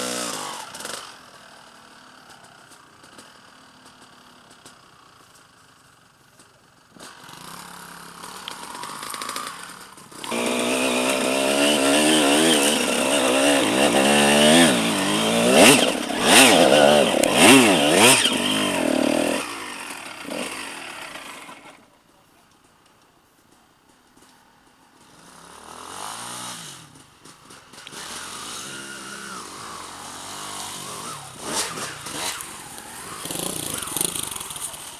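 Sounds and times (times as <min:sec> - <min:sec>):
motorcycle engine revving hard: 0:00.0 - 0:01.4, 0:06.9 - 0:21.8, 0:25.0 - 0:34.9.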